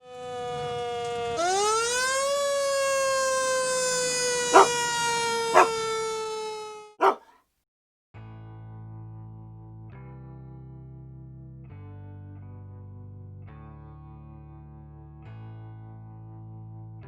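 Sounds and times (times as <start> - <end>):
music: 8.3 - 16.9.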